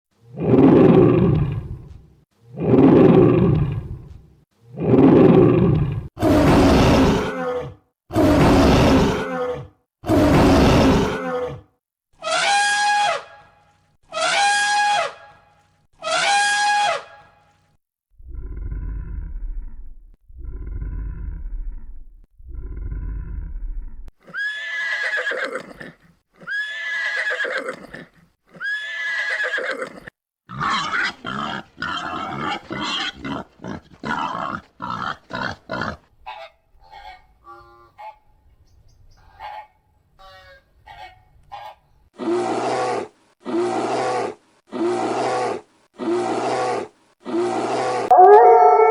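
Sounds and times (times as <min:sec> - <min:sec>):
farm animal calls: 0:39.2 - 0:41.8, 0:47.8 - 0:48.9.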